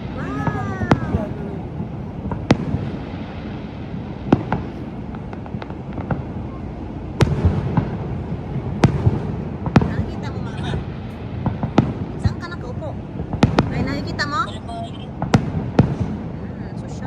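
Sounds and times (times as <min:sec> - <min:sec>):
fireworks bursting with bangs: 0:00.0 - 0:17.0
small firework pops: 0:04.3 - 0:06.4.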